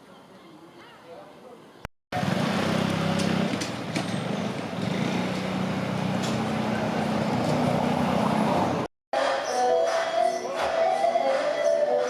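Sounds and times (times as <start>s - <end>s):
vehicle engine running: 2.2s - 8.8s.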